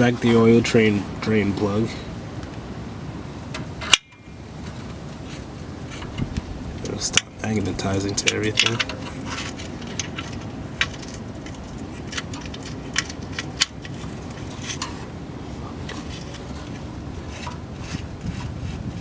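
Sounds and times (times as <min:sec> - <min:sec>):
steady low hum: 0:00.0 - 0:19.0
metallic tool clicks and taps: 0:08.2 - 0:09.1.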